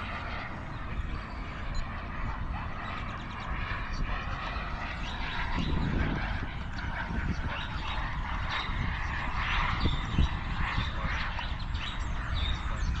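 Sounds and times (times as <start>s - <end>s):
model jet turbine engine: 0.0s - 13.0s.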